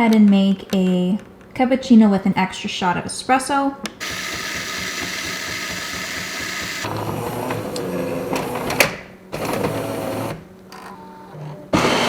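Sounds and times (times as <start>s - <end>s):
low mechanical hum: 0.0s - 12.0s
coffee grinder running: 4.0s - 8.8s, 9.4s - 10.4s, 11.8s - 12.0s.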